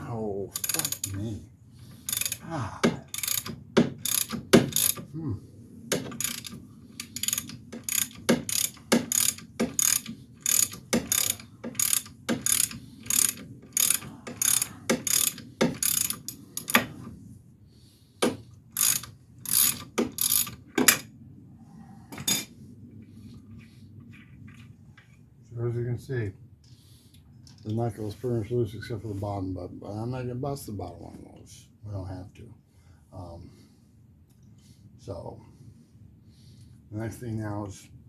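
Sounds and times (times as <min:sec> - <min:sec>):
ratchet wrench clicking: 0:00.6 - 0:01.2, 0:02.0 - 0:02.4, 0:03.1 - 0:05.1, 0:05.9 - 0:16.9, 0:18.8 - 0:21.0.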